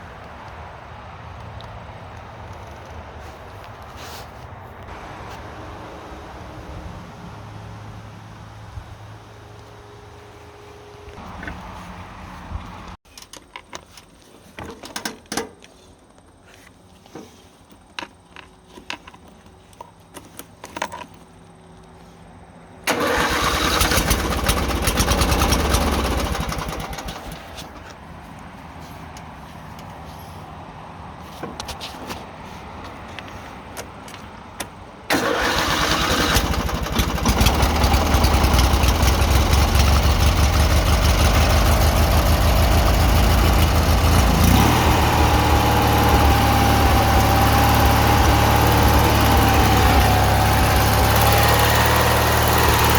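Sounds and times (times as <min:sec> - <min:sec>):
riding mower engine running: 0:04.9 - 0:13.0, 0:22.8 - 0:28.4, 0:35.1 - 0:52.9.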